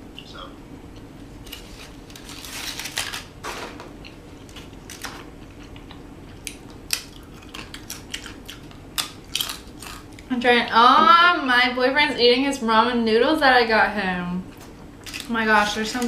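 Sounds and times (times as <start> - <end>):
food packaging crinkling: 1.4 - 5.7, 6.9 - 10.3, 14.6 - 16.0.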